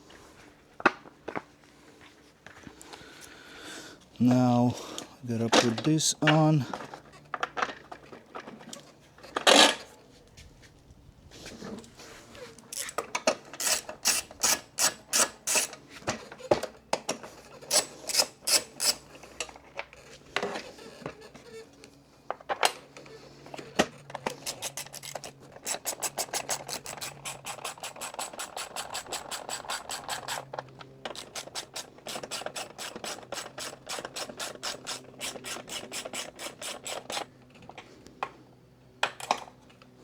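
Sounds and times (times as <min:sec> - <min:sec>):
knocks and clatter of parts: 0:05.5 - 0:09.9
ratchet wrench clicking: 0:31.2 - 0:37.3.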